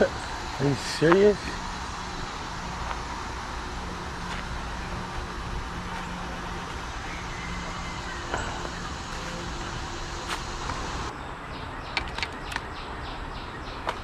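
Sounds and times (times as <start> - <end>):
low background rumble: 0.0 - 11.1
low hum: 0.0 - 11.8.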